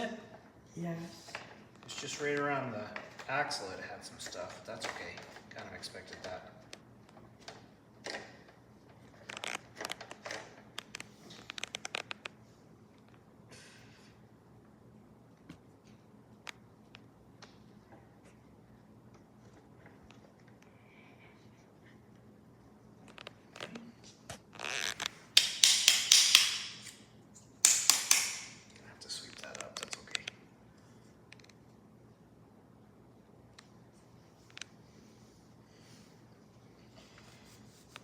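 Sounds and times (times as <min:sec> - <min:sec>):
plastic parts clicking and knocking: 0:25.4 - 0:26.8.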